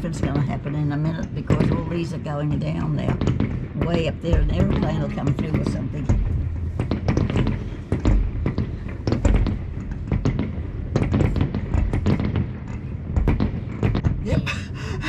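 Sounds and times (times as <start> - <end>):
fireworks deep booms: 0.0 - 15.0
fireworks crackling pops: 3.0 - 14.3.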